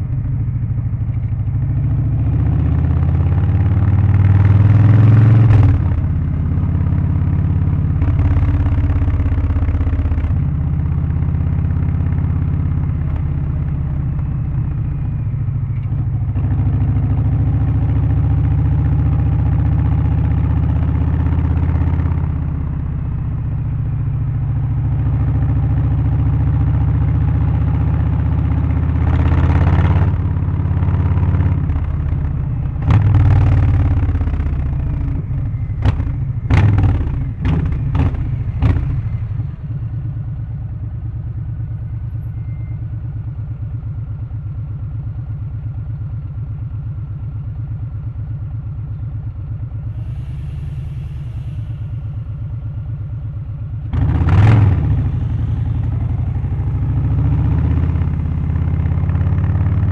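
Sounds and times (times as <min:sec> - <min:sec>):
motorcycle engine revving: 0:01.9 - 0:13.6, 0:24.8 - 0:40.2, 0:53.8 - 0:59.9.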